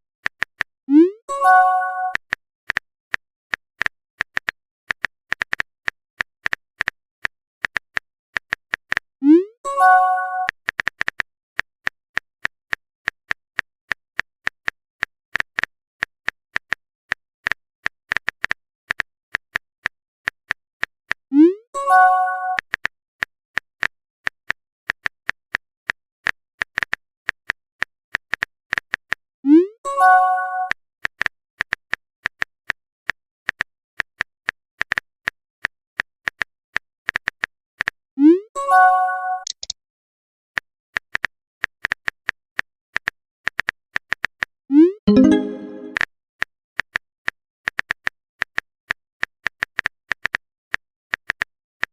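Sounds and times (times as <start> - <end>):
keyboard typing clicks: 39.4 - 39.7, 43.0 - 46.0.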